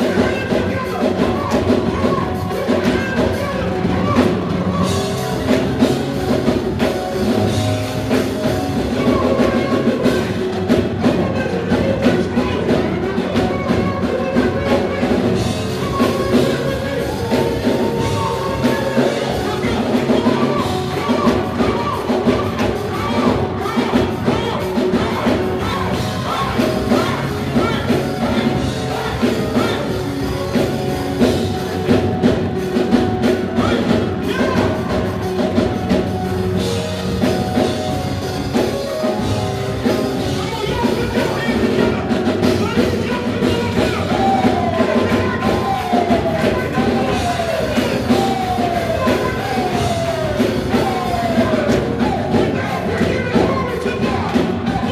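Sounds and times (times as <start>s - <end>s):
drums: 0.0s - 54.9s
live band music: 0.0s - 54.9s
person singing: 0.0s - 54.9s.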